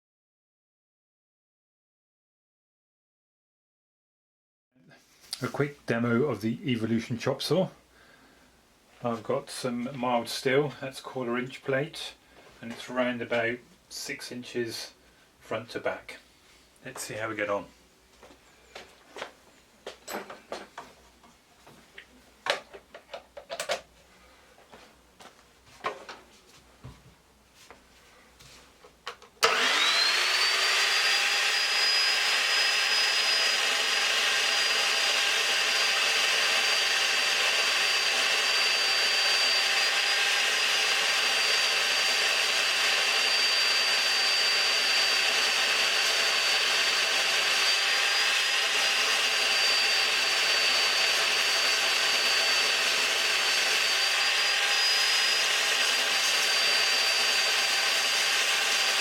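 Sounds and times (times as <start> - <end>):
chop saw cutting steel: 29.4 - 59.0
saw motor whine: 29.4 - 59.0.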